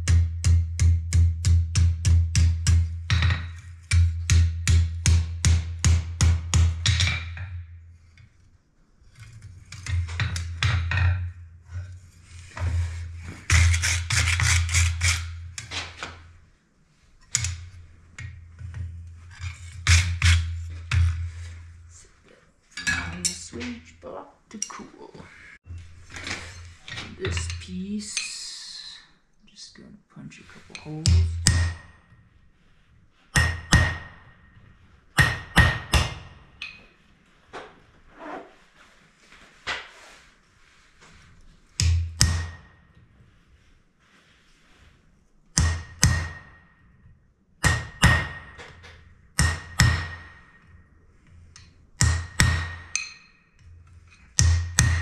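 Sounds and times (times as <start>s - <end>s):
hand tool scraping metal: 9.1s - 16.0s, 17.2s - 22.0s, 25.6s - 28.4s
hammer striking punch on anvil: 31.0s - 32.1s, 33.4s - 34.6s, 35.2s - 36.8s, 41.8s - 42.8s, 45.6s - 46.8s, 47.6s - 48.8s, 49.4s - 50.6s, 52.0s - 53.4s, 54.4s - 55.0s.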